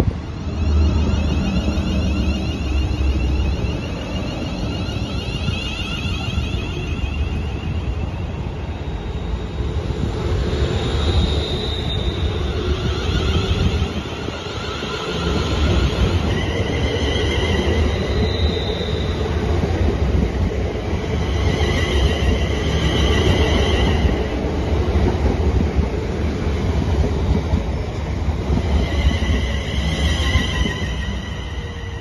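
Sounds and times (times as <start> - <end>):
train rumbling past: 0.0 - 32.0
high-pitched squealing: 0.3 - 9.4.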